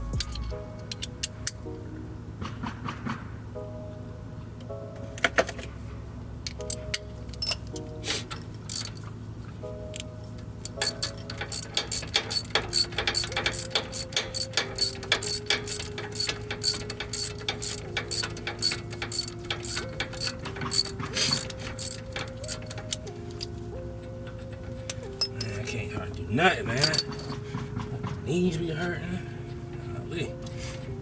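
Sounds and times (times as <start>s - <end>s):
hand ratchet clicking: 8.3s - 9.1s, 9.9s - 23.5s, 26.8s - 27.4s.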